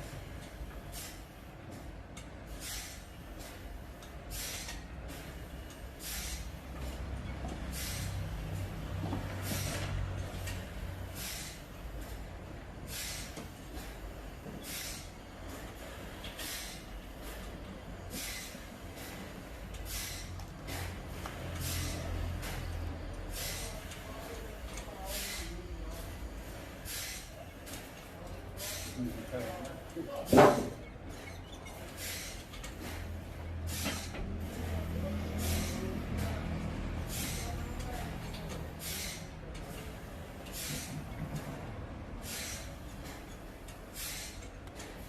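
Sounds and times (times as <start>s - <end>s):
short hissing bursts: 38.8s - 39.3s, 40.6s - 40.9s, 44.0s - 44.4s.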